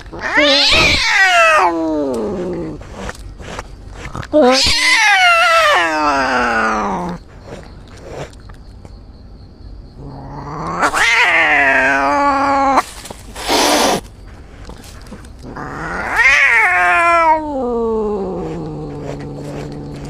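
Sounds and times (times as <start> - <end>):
cat yowling: 0.1 - 2.8, 4.4 - 7.2, 10.1 - 12.8, 15.5 - 20.0
cat hiss: 13.3 - 14.0.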